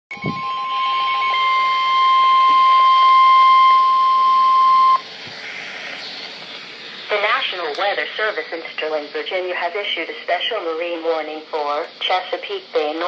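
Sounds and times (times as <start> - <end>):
fast pulsed beeping: 0.1 - 5.0
steady high alert tone: 0.1 - 5.0.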